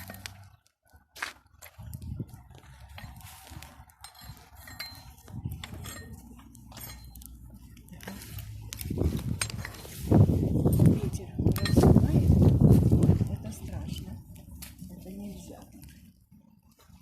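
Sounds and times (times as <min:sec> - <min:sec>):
bonfire crackling: 0:00.0 - 0:17.0
wind buffeting microphone: 0:01.7 - 0:06.2, 0:08.6 - 0:14.5.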